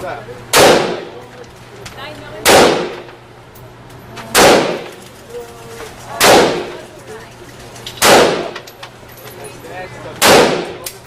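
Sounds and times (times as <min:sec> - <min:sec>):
gunshots echoing indoors: 0:00.5 - 0:01.2, 0:02.4 - 0:03.1, 0:04.3 - 0:05.0, 0:06.2 - 0:06.9, 0:08.0 - 0:08.6, 0:10.2 - 0:10.9.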